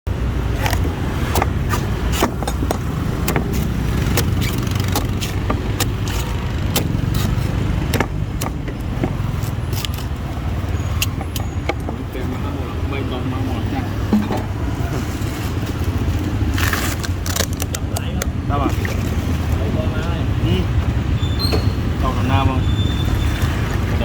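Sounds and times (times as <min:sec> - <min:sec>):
low traffic rumble: 0:00.1 - 0:24.0
blade chopping coconut: 0:00.5 - 0:12.0.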